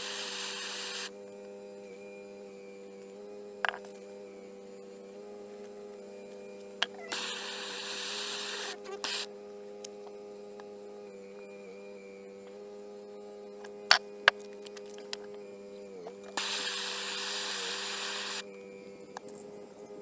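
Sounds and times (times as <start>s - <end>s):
steady hiss: 0.0s - 1.1s, 16.3s - 18.4s
small electric motor humming: 0.0s - 20.0s.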